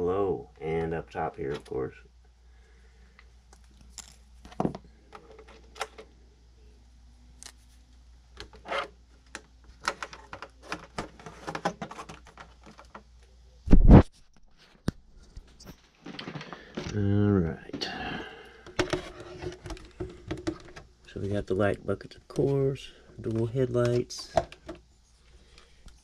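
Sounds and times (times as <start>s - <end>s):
objects being handled: 3.1s - 6.2s, 7.3s - 17.0s, 18.6s - 26.0s.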